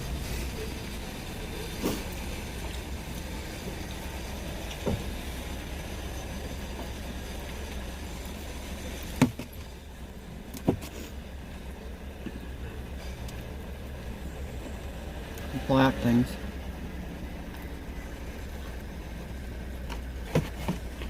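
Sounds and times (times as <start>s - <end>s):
vehicle low rumble: 0.0s - 21.0s.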